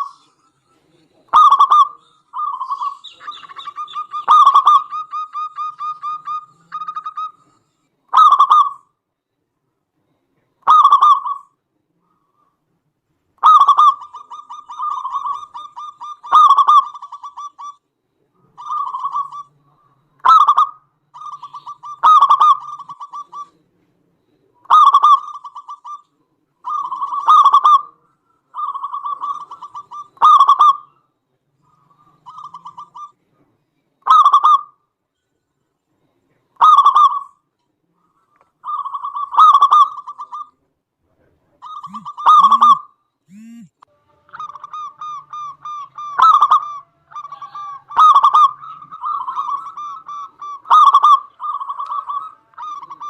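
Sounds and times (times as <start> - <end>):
zebra dove cooing: 0.0 - 8.9, 13.4 - 17.8, 18.4 - 23.8, 24.5 - 31.0, 31.6 - 33.3, 41.6 - 53.0.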